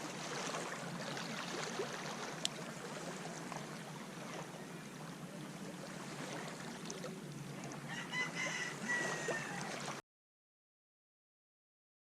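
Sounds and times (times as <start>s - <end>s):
waves washing on a beach: 0.0s - 10.0s
rooster crowing: 7.9s - 9.9s.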